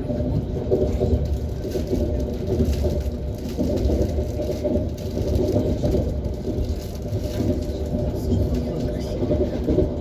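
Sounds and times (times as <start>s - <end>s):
train wheels rumbling on rails: 0.0s - 10.0s.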